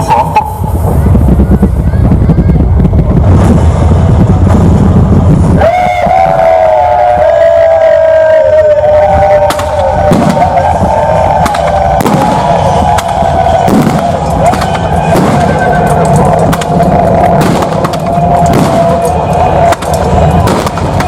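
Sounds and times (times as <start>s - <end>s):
sustained soundtrack music: 0.0s - 21.0s
cracks and bangs of combat: 9.4s - 10.7s, 11.3s - 21.0s.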